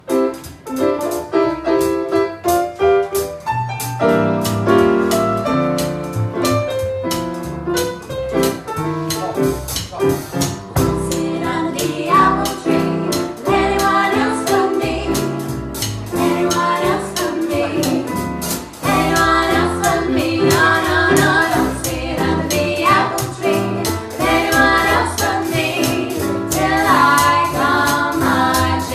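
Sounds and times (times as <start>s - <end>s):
piano or keyboard: 0.0s - 28.9s
steady beat: 1.8s - 28.9s
people singing: 10.9s - 28.9s.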